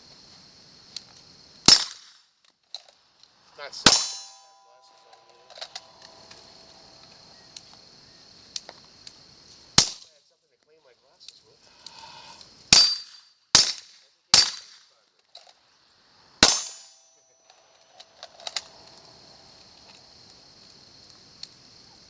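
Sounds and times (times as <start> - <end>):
pistol shots: 1.7 - 2.0, 3.8 - 6.2, 12.7 - 13.8, 14.4 - 14.8, 16.4 - 17.0.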